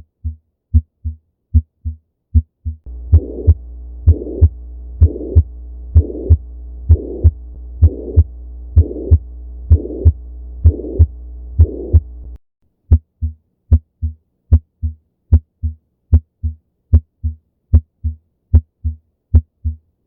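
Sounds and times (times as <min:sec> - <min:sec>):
heartbeat lub-dub: 0:00.0 - 0:19.8
heart murmur: 0:00.2 - 0:12.2
steady hum: 0:02.9 - 0:12.4.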